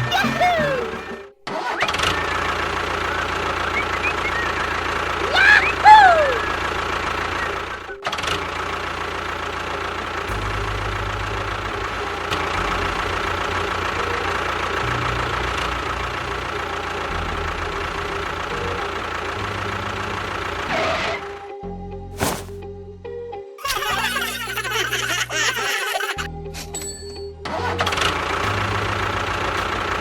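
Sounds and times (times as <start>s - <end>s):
small motor running: 1.8s - 21.4s.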